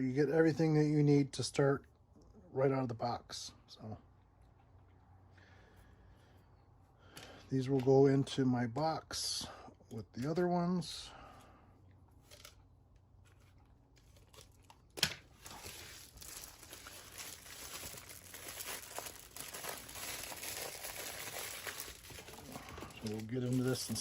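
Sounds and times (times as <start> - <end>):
packaging crinkling and rustling: 13.2 - 24.0.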